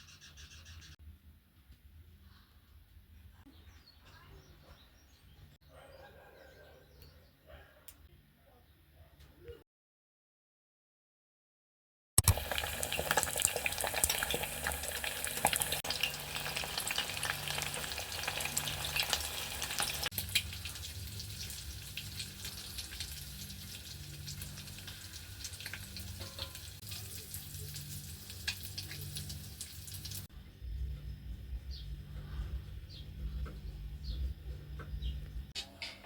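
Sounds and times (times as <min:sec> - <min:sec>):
food sizzling in a pan: 0:12.2 - 0:30.3.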